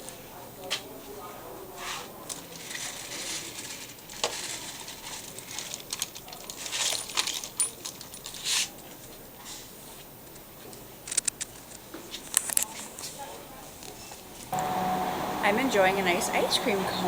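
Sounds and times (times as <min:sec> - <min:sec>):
small objects rustling and clicking: 0:02.3 - 0:09.1, 0:11.0 - 0:13.2.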